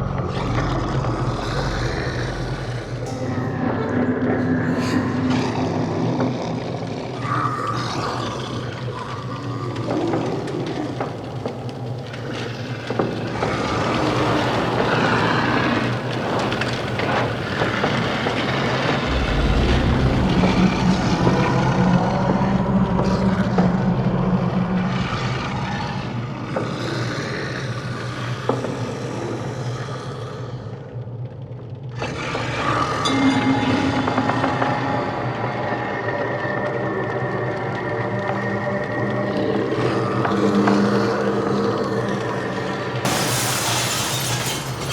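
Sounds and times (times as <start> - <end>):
deep rumble: 0.0 - 9.9, 13.6 - 25.9
noisy textures: 0.0 - 26.5
low drone: 0.0 - 26.6.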